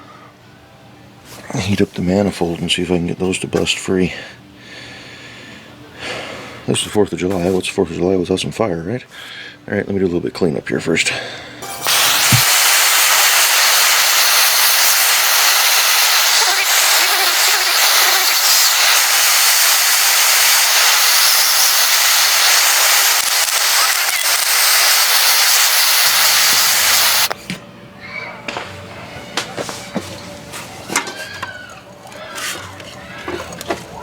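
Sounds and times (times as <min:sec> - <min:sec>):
pressurised gas hissing: 0:11.6 - 0:27.4.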